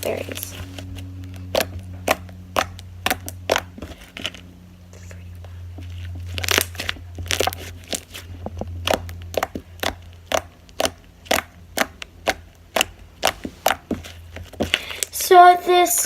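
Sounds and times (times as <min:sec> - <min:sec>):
slime clicking in hands: 0:01.2 - 0:03.8, 0:08.6 - 0:13.9.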